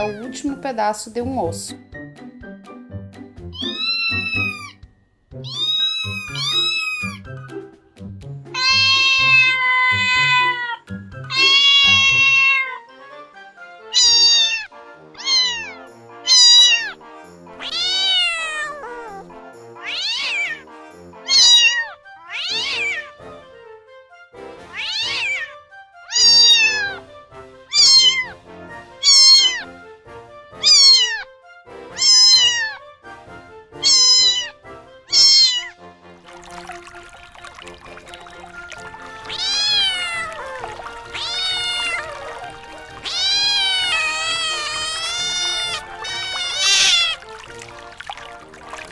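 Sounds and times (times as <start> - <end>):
background music: 0.0 - 48.9
cat meowing: 3.5 - 4.8, 5.4 - 7.2, 8.5 - 12.9, 13.9 - 17.0, 17.6 - 20.6, 21.2 - 23.1, 24.7 - 27.0, 27.7 - 28.4, 29.0 - 29.7, 30.6 - 31.3, 31.9 - 32.8, 33.8 - 35.8, 38.6 - 48.9.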